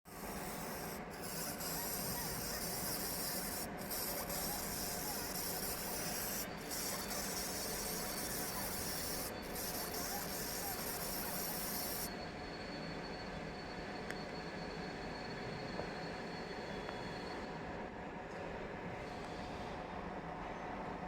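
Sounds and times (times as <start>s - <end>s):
laser engraving metal sizzle: 0.1s - 12.2s
steady low hum: 0.1s - 17.0s.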